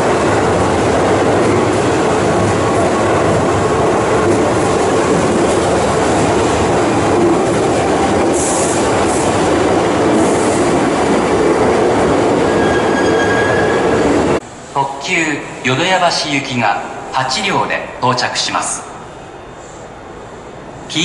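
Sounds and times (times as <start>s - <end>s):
train wheels rumbling on rails: 0.0s - 14.5s.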